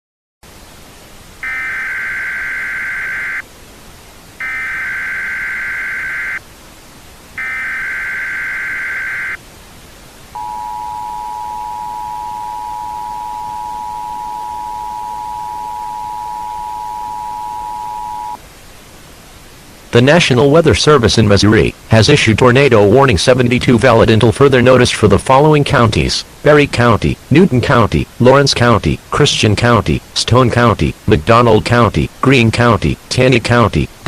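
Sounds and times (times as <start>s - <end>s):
faint hiss: 0.4s - 34.0s
screechy digital data bursts: 1.4s - 3.4s, 4.4s - 6.4s, 7.4s - 9.4s
two-tone attention signal: 1.4s - 3.4s, 4.4s - 6.4s, 7.4s - 9.4s, 10.4s - 18.4s.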